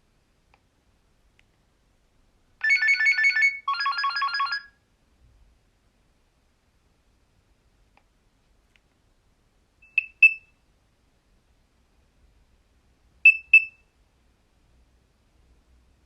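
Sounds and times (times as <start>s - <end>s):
mobile phone short high beeps: 9.8s - 10.6s, 13.2s - 13.8s.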